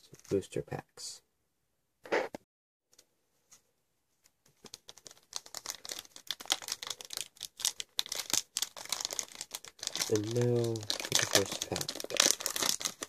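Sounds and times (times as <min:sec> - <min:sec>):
foil wrapper crinkling: 0:04.6 - 0:13.0.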